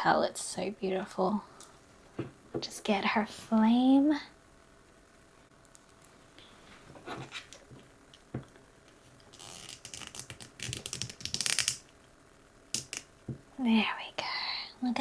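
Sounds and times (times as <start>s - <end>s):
plastic rustling and scraping: 6.7s - 7.8s.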